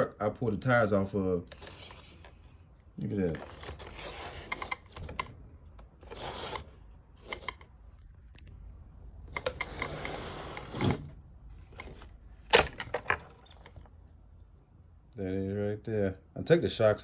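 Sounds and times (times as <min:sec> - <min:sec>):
rubbing and scraping: 0:03.2 - 0:05.1, 0:06.0 - 0:07.7.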